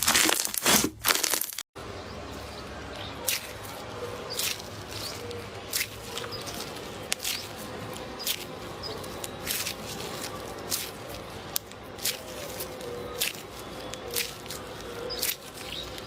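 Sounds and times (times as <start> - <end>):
slime squishing by hand: 3.2 - 16.0.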